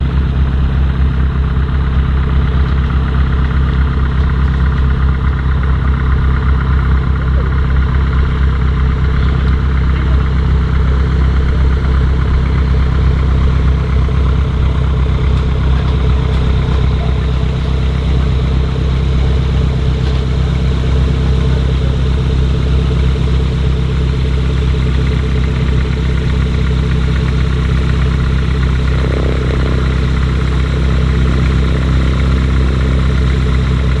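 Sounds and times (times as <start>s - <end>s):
light aircraft piston engine running: 0.0s - 34.0s.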